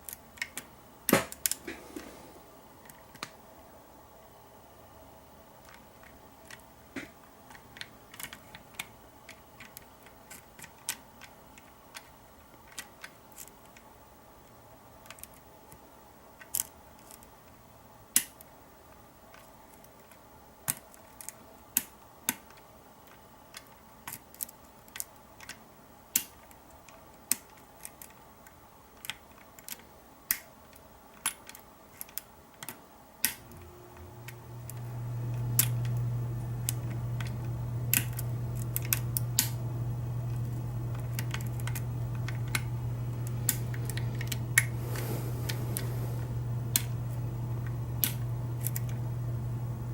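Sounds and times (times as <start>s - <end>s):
low hum: 33.4s - 49.9s.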